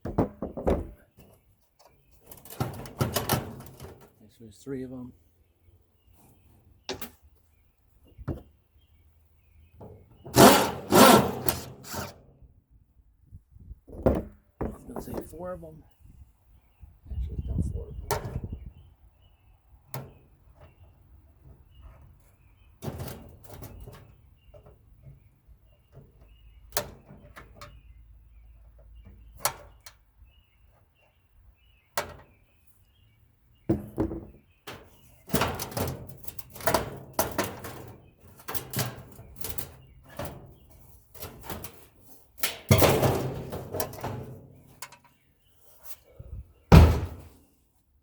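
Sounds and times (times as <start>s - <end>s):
sheet metal clanking and rattling: 42.4s - 44.5s.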